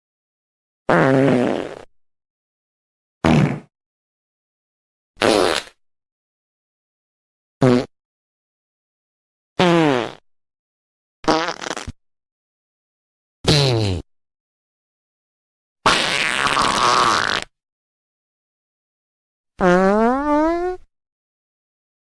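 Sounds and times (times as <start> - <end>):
fart sounds: 0.9 - 1.9, 3.2 - 3.7, 5.2 - 5.8, 7.6 - 7.9, 9.6 - 10.2, 11.2 - 12.0, 13.5 - 14.0, 15.8 - 17.5, 19.6 - 20.9.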